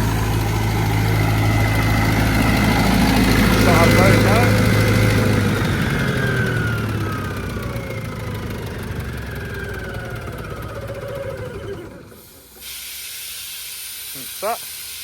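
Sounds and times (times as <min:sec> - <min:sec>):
air compressor engine throttling down: 0:00.0 - 0:15.0
steady hiss: 0:12.2 - 0:15.0.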